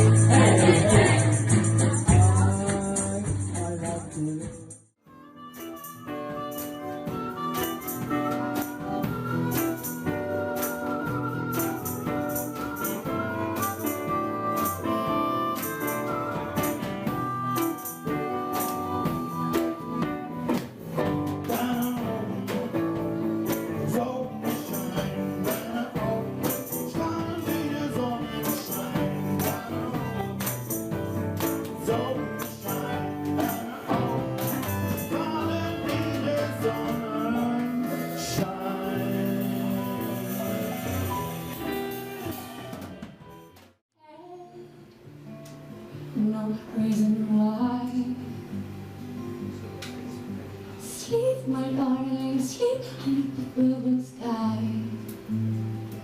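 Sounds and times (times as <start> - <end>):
instrumental music with percussion beat: 0.0 - 43.7.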